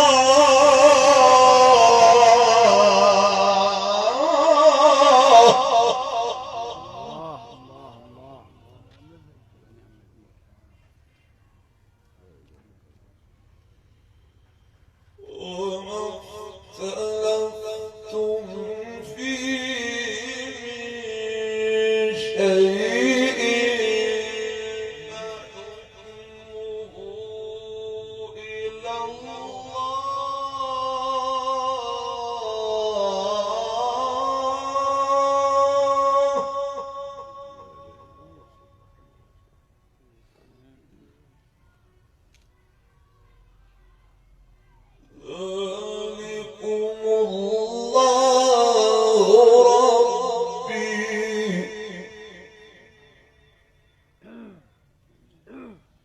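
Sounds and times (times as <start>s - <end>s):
man chanting melodic recitation: 0.0s - 10.3s, 15.2s - 38.9s, 45.2s - 54.5s.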